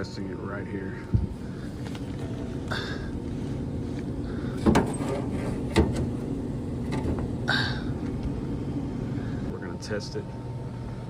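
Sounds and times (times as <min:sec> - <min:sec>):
gas furnace humming: 0:00.0 - 0:11.0.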